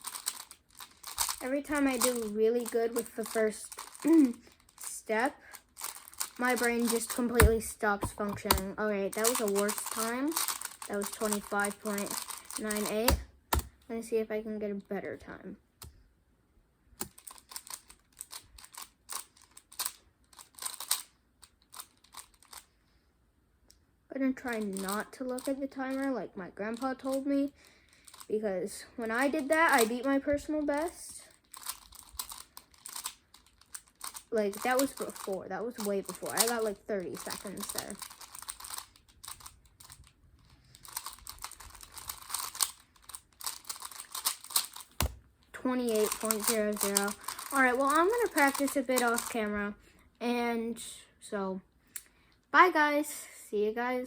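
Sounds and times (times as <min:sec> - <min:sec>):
puzzle cube clicking as turned: 0:00.0 - 0:02.3, 0:05.8 - 0:13.7, 0:17.0 - 0:22.6, 0:28.1 - 0:28.3, 0:31.4 - 0:35.3, 0:36.1 - 0:45.2, 0:45.9 - 0:49.4.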